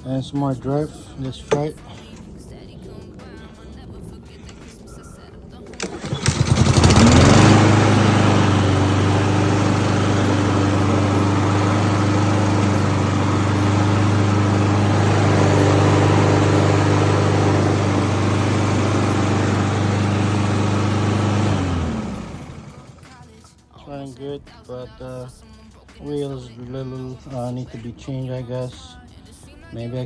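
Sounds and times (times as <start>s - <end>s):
lawn mower engine starting and running: 0.0s - 23.5s.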